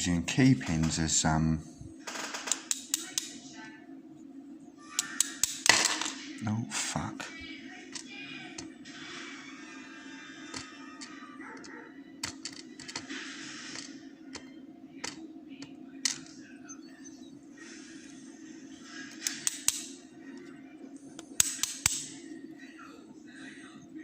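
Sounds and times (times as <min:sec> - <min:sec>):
steady low hum: 0:00.0 - 0:24.0
small metallic clicks and scrapes: 0:19.2 - 0:19.9.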